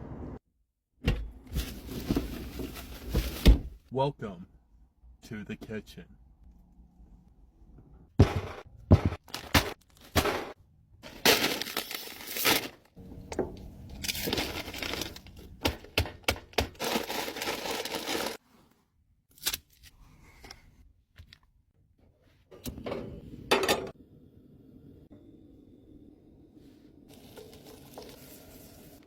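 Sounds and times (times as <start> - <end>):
packaging crinkling: 11.1 - 13.0, 13.9 - 15.5, 16.8 - 18.4
food packaging tearing: 16.8 - 18.4.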